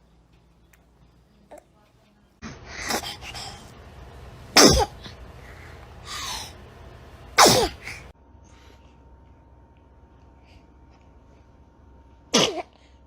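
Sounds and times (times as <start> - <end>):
baby sneezing: 2.7 - 3.5, 4.6 - 5.2, 7.4 - 8.0, 12.4 - 12.8.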